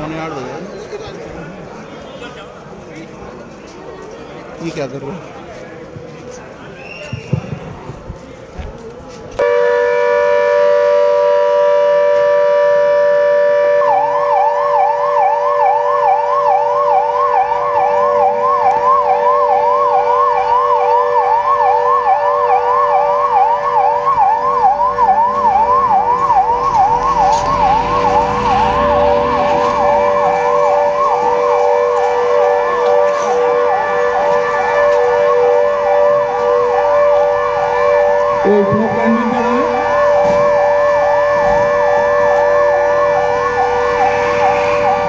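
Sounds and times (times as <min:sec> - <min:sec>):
steady siren tone: 0:09.4 - 0:45.0
fast yelp siren: 0:09.6 - 0:45.0.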